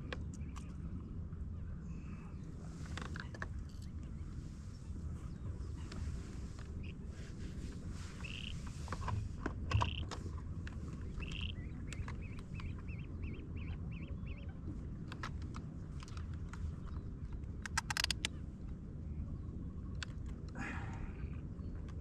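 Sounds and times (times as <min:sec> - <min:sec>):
steady low rumble: 0:00.0 - 0:22.0
birds calling: 0:02.0 - 0:15.5
sharp clicks: 0:17.6 - 0:18.4.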